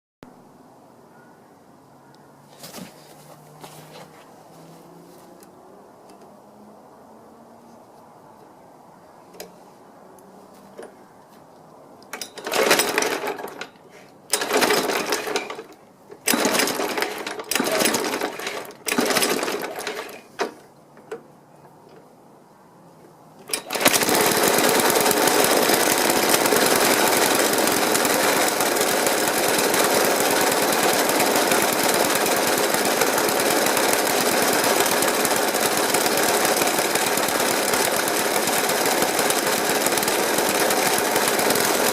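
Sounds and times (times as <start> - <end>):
lawnmower engine starting and idling rough: 12.1 - 20.6, 23.4 - 41.9.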